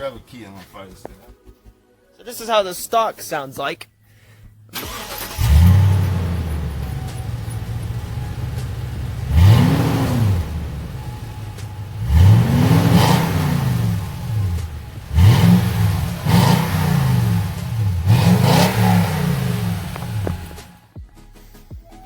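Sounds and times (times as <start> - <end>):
loud engine revving: 4.8 - 20.8.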